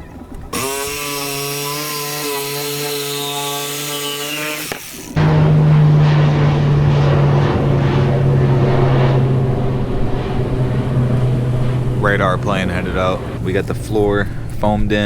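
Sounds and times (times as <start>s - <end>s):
propeller airplane engine drone: 4.7s - 15.0s.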